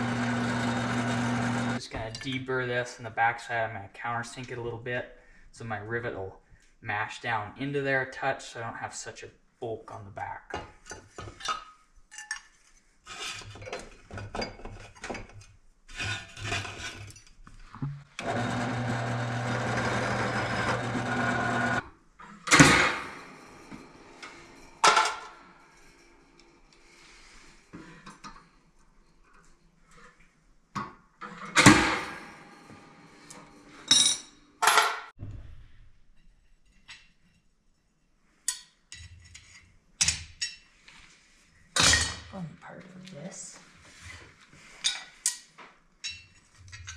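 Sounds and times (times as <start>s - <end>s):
power drill drilling steel: 0.0s - 1.8s, 18.2s - 21.8s.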